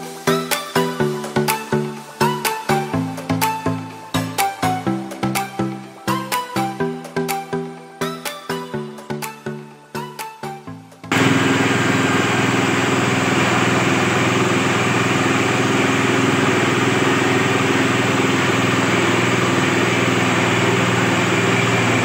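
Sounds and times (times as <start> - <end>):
grinder machine motor running: 11.1 - 22.0.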